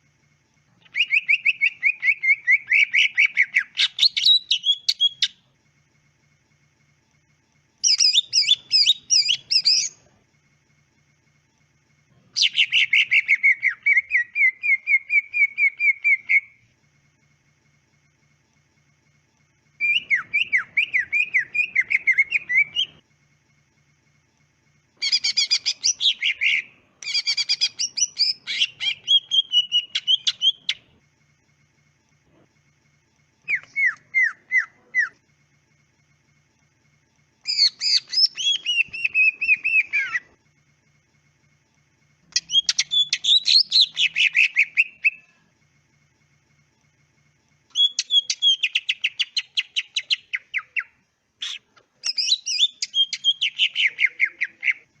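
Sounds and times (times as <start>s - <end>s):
bird singing whistled notes: 0.8s - 5.4s, 7.8s - 10.0s, 12.4s - 16.6s, 19.8s - 23.0s, 25.0s - 30.8s, 33.4s - 35.2s, 37.4s - 40.3s, 42.4s - 45.3s, 47.7s - 54.8s.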